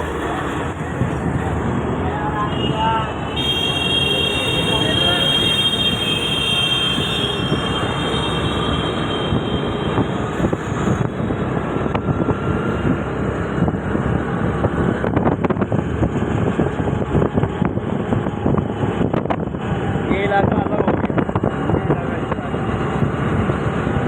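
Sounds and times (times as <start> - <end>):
wind on microphone: 7.4 - 24.0.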